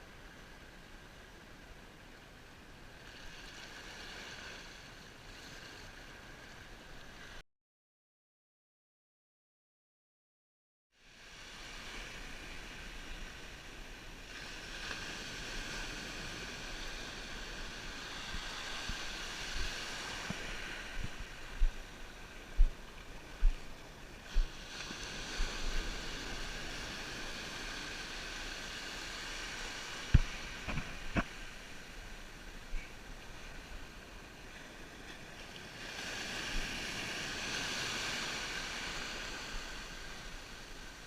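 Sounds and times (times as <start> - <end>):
sea surf washing: 11.1 - 41.0.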